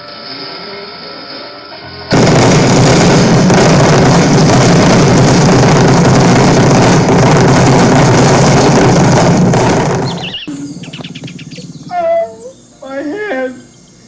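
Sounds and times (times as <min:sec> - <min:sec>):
fireworks barrage: 0:02.1 - 0:12.0.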